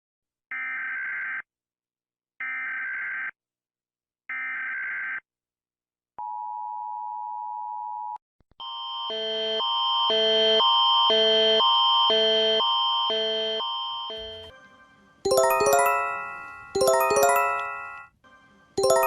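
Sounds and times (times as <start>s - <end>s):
alarm of alternating tones: 8.6s - 14.5s
two-tone attention signal: 13.4s - 14.5s.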